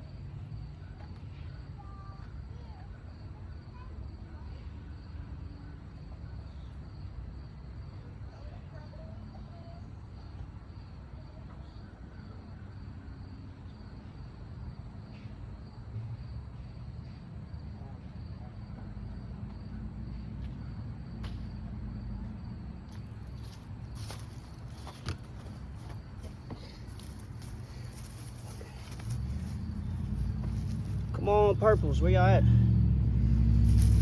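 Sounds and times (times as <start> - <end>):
insects chirping: 0.0 - 4.2, 4.8 - 34.0
low outdoor rumble: 0.0 - 34.0
hands digging in soil: 26.6 - 31.2, 33.5 - 34.0.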